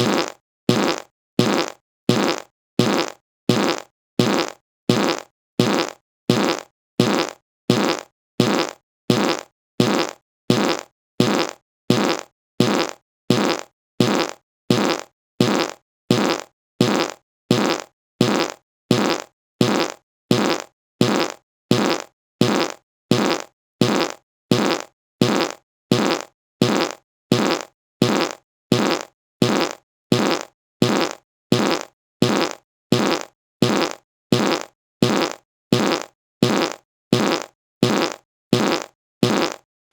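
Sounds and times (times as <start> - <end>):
short farts: 0.0 - 39.6.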